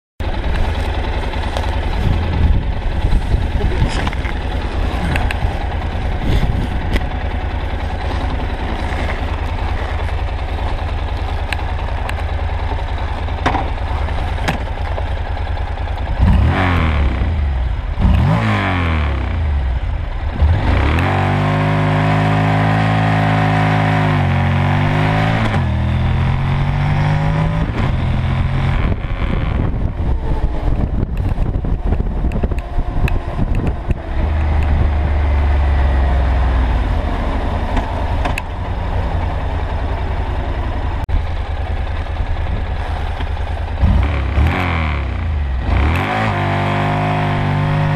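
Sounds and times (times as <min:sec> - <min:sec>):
gear shifts: 0:00.2 - 0:16.6, 0:40.9 - 0:44.6
motorcycle engine revving: 0:00.2 - 0:47.9.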